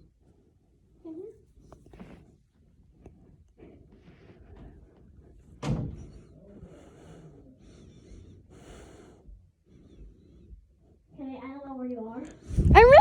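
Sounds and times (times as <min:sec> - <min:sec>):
thump: 0:05.6 - 0:06.2.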